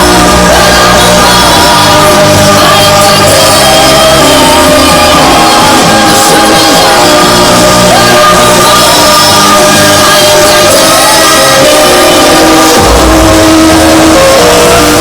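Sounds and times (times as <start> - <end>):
loud live dance music: 0.0 - 15.0
shouted or sung vocals: 0.0 - 15.0.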